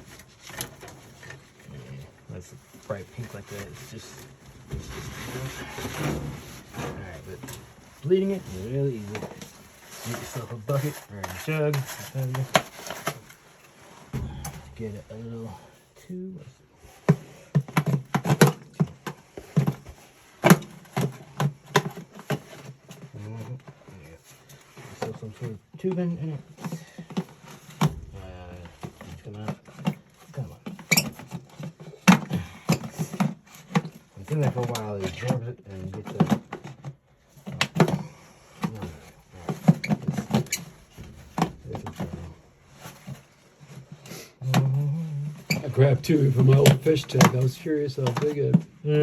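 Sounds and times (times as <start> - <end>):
sharp knocks and clatters: 0.0 - 16.0, 26.6 - 35.4, 36.0 - 44.1.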